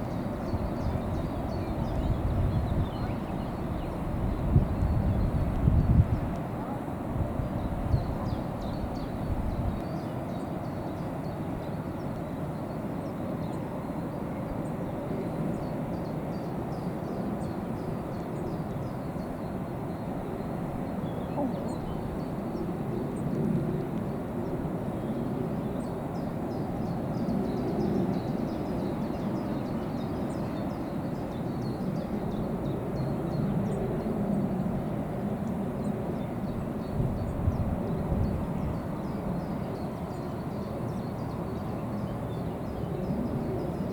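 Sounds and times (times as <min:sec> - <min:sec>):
wind rumble on microphone: 0:00.0 - 0:43.9
faint high ticks and chirps: 0:04.7 - 0:06.5, 0:08.0 - 0:13.6.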